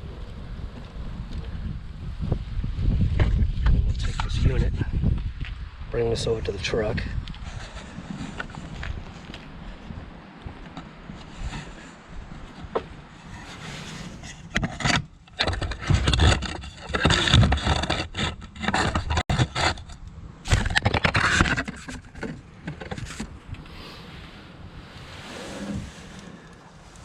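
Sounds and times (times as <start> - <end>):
scraping and rubbing handling noise: 6.8 - 27.0.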